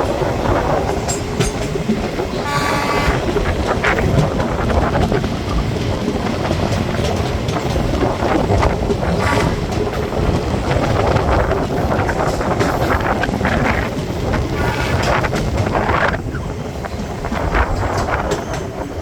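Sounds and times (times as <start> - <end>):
train rumbling along track: 0.0 - 19.0
wheels clacking over rail joints: 0.0 - 19.0.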